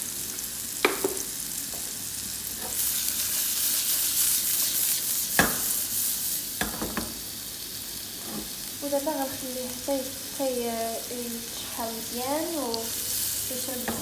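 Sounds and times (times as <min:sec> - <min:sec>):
carrots sizzling in oil: 0:00.0 - 0:14.0
utensil knocking against pan: 0:05.4 - 0:05.7.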